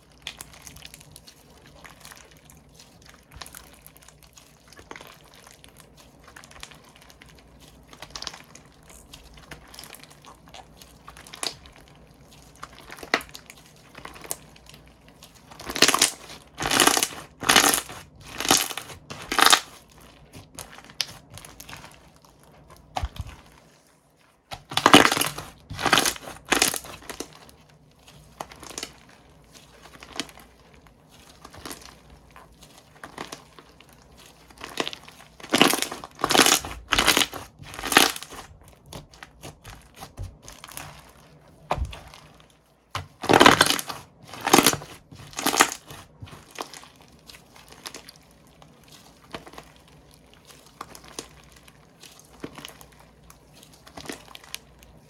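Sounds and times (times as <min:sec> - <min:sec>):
slime squeezed by hand: 0:24.5 - 0:27.5, 0:31.1 - 0:55.0.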